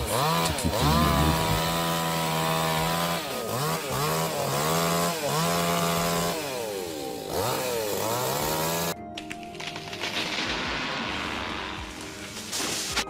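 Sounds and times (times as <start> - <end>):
chainsaw revving while cutting: 0.0 - 9.0.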